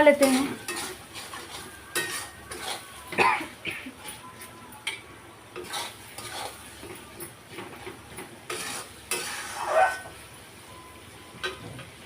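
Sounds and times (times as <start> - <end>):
metal spoon scraping a pan: 0.0 - 3.1, 5.5 - 10.2
faint sizzling: 0.0 - 12.0.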